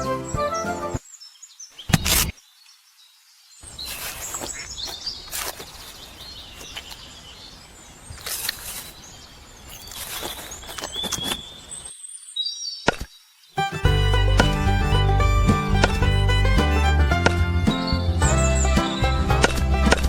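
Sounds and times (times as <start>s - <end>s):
outdoor ambience: 0.0s - 20.0s
birds chirping: 3.6s - 20.0s
handling noises: 3.8s - 7.1s.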